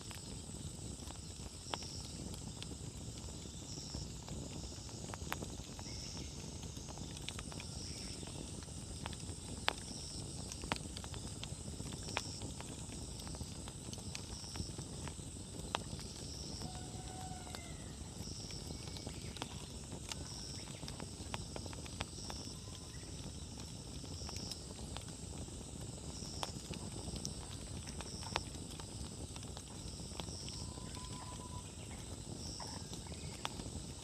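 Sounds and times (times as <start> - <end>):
firewood crackling and popping: 0.0 - 34.0
low rush of flames: 0.0 - 34.0.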